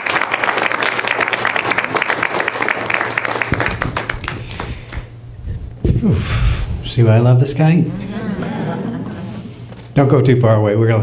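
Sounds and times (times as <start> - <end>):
congregation applauding: 0.0 - 5.1.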